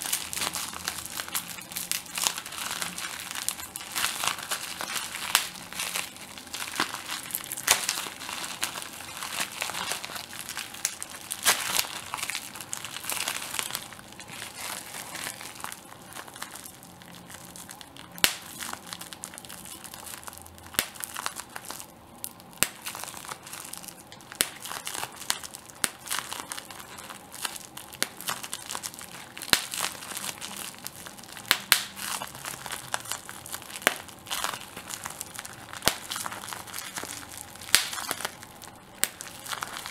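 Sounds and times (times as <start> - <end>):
bubble wrap crinkling: 0.0 - 39.9
bubble wrap popping: 0.0 - 39.9.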